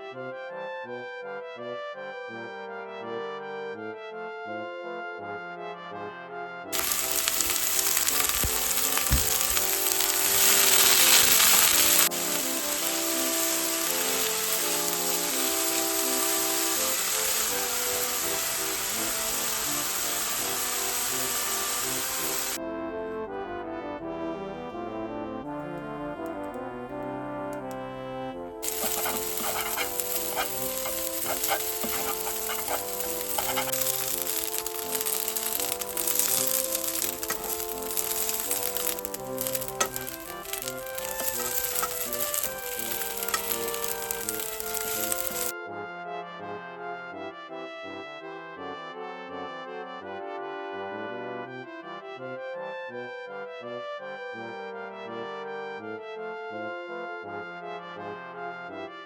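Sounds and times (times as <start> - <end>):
food sizzling in frying pan: 6.8 - 22.6, 28.6 - 45.5.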